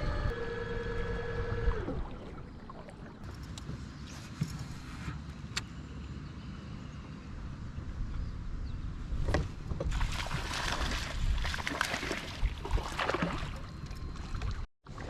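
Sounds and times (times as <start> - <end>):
crackling water: 1.6 - 4.9
wind rumbling on microphone: 7.4 - 14.7.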